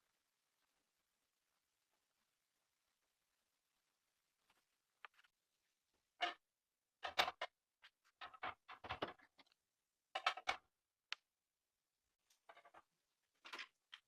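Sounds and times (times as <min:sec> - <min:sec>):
objects clicking and knocking: 0:07.0 - 0:10.7, 0:12.3 - 0:14.0.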